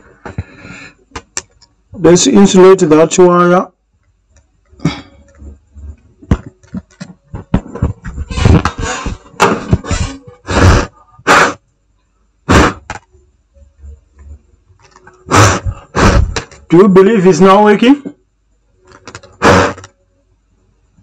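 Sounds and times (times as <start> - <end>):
scraping or rustling bursts: 6.6 - 10.9.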